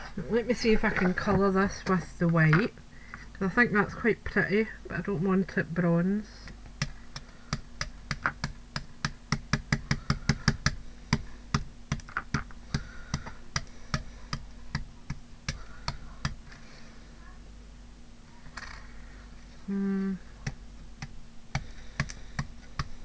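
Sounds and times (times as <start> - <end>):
paintbrush tapping on metal: 6.4 - 16.6.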